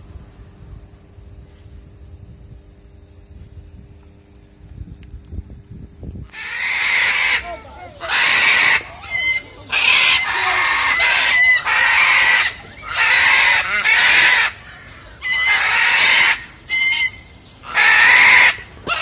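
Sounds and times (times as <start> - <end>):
birds giving harsh calls: 6.2 - 19.0.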